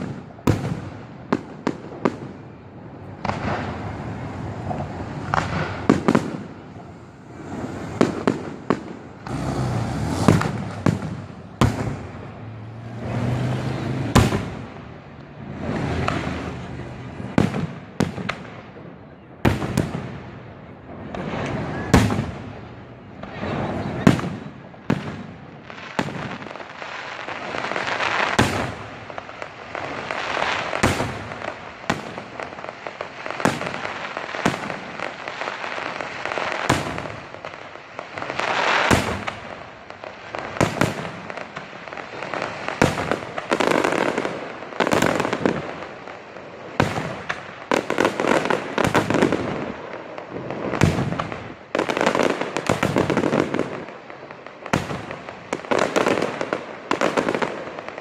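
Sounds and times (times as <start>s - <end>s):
fireworks crackling: 0.0s - 58.0s
firework shells bursting with bangs: 3.2s - 12.4s, 13.5s - 16.6s, 24.0s - 58.0s.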